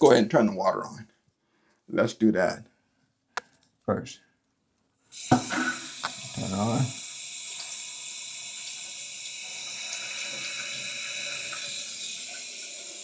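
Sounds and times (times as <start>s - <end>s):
toilet tank filling hiss: 5.1s - 13.0s.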